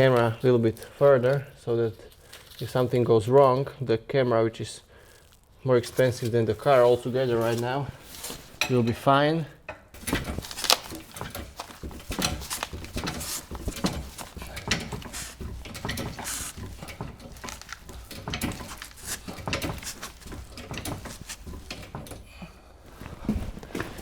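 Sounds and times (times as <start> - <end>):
knocks and scrapes: 5.8 - 8.8, 10.0 - 24.0.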